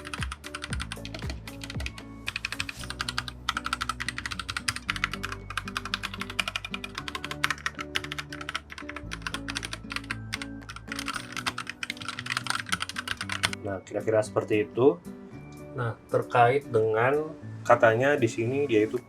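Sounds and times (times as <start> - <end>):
mechanical keyboard typing: 0.0 - 13.6
background music: 0.0 - 19.0.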